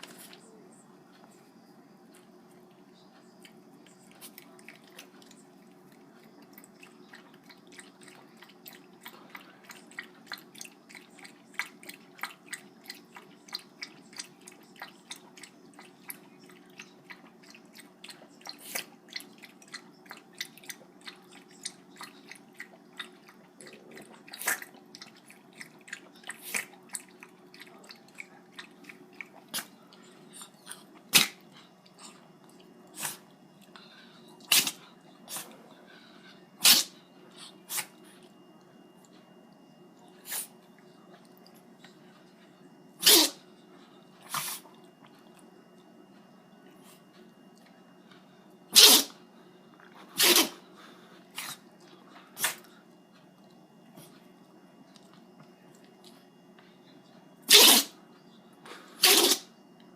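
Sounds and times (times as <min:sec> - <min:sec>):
dog sneezing and snorting: 0:31.1 - 0:31.4, 0:33.0 - 0:33.3, 0:34.5 - 0:35.5, 0:36.6 - 0:37.0, 0:37.7 - 0:38.0, 0:43.0 - 0:43.4, 0:44.2 - 0:44.7, 0:48.7 - 0:49.2, 0:50.1 - 0:50.6, 0:51.3 - 0:51.6, 0:52.4 - 0:52.7, 0:57.4 - 0:58.0, 0:59.0 - 0:59.5.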